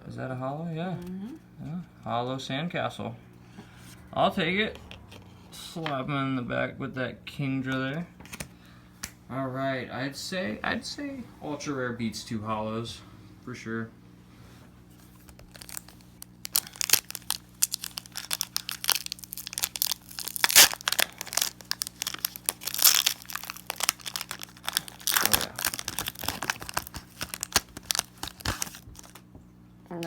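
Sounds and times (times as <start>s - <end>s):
foil wrapper tearing and crinkling: 15.0s - 29.2s.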